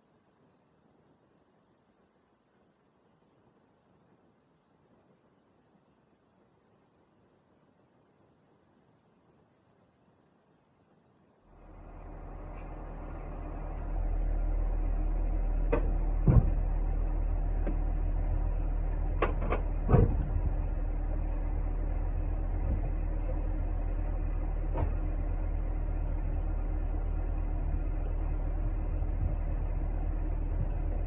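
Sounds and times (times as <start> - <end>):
car engine humming: 11.5 - 31.0
sharp knocks and clicks: 15.7 - 16.6, 19.2 - 20.3.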